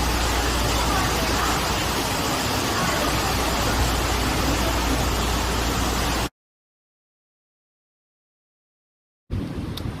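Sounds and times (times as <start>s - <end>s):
heavy rain hissing: 0.0s - 6.3s
road traffic: 0.0s - 6.3s.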